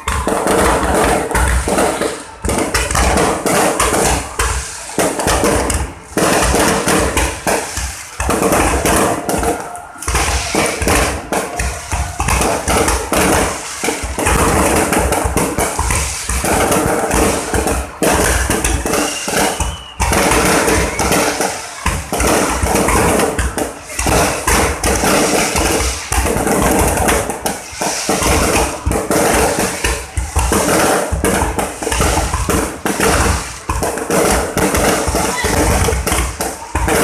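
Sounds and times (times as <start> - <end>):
fireworks bangs and thuds: 0.0 - 37.0.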